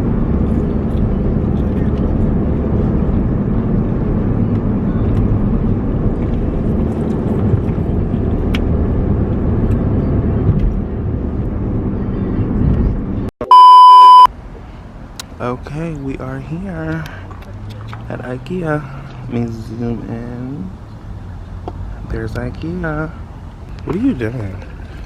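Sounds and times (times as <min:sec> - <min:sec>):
car road and engine noise: 0:00.0 - 0:25.0
high-pitched beep: 0:13.4 - 0:14.3.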